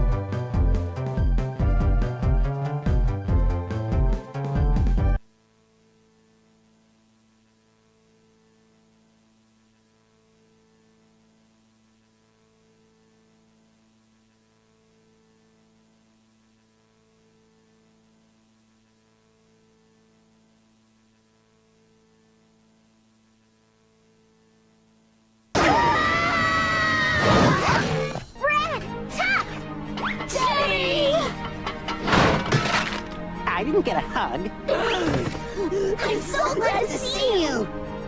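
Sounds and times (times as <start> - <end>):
faint electrical mains hum: 0.0 - 27.2.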